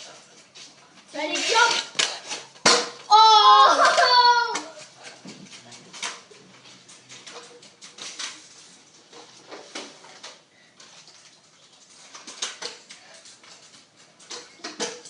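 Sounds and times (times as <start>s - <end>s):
kick scooters clattering on floor: 0.0s - 15.0s.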